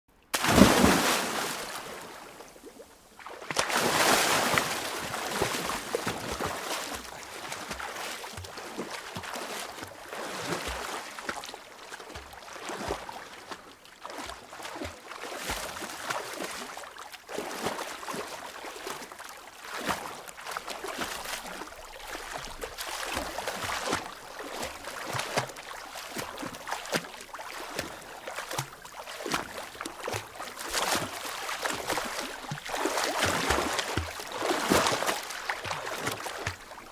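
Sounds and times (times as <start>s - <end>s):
big splash into water: 0.3s - 2.2s, 30.7s - 36.6s
water sloshing: 0.4s - 11.0s, 19.6s - 36.9s.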